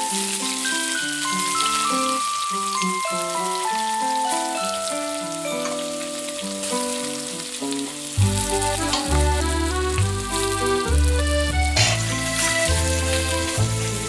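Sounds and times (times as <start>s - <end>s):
curry sizzling in a pan: 0.0s - 14.0s
background music with bass beat: 8.2s - 14.0s.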